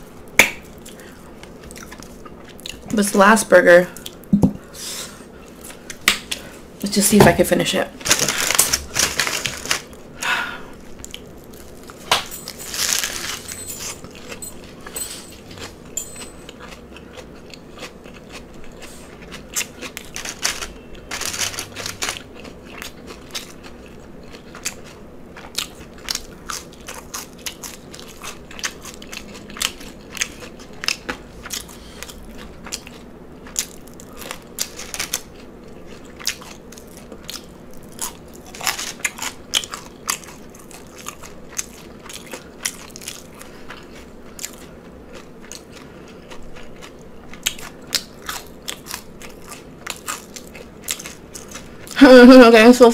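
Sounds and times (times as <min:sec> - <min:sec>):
chewing crunchy lettuce: 0:00.0 - 0:02.9, 0:08.0 - 0:52.0.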